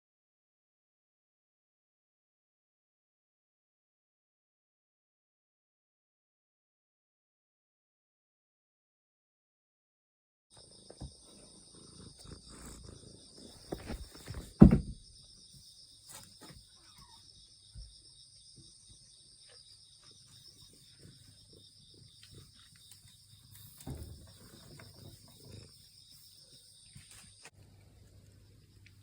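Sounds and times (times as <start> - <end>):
insects chirping: 10.5 - 29.0
faint knocks and rustling: 13.5 - 15.1, 22.3 - 25.7
loud low thump: 13.8 - 15.1.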